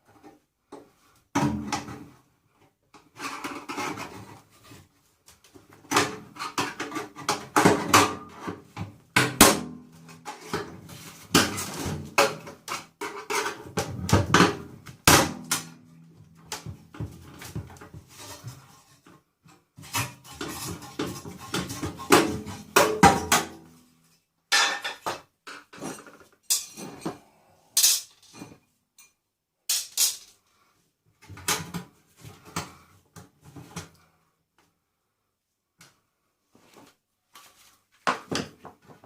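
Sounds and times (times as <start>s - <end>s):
metal parts and tools clinking: 25.8s - 27.2s, 27.8s - 30.4s.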